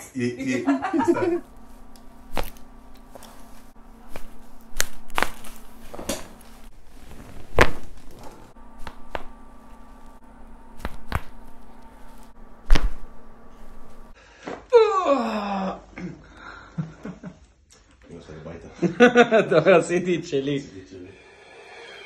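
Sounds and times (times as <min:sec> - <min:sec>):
spinal joints cracking: 0:01.5 - 0:10.2, 0:10.8 - 0:14.0.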